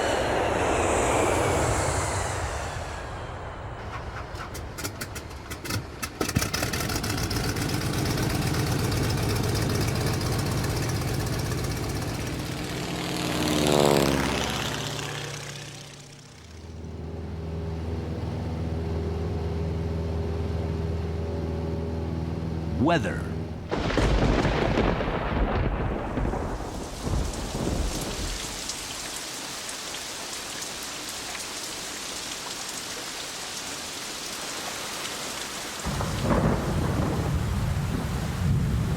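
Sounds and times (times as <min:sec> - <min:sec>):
aircraft passing by: 0:00.0 - 0:25.6
aircraft engine starting with pops: 0:03.8 - 0:12.8
engine idling with low hum: 0:03.8 - 0:13.0.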